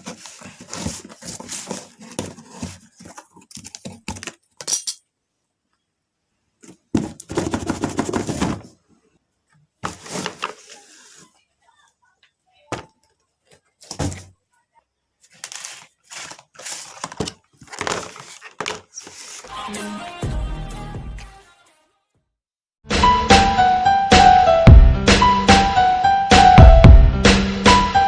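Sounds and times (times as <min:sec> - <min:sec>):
packaging crackling and rustling: 0:00.0 - 0:04.4, 0:15.2 - 0:19.5.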